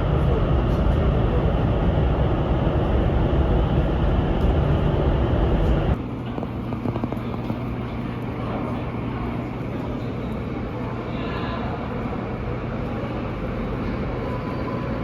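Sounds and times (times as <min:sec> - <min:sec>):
train running rumble: 0:00.0 - 0:11.0.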